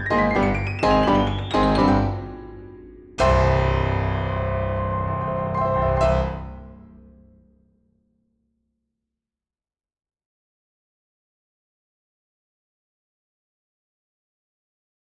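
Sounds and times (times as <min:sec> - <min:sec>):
piano chords: 0:00.0 - 0:07.2.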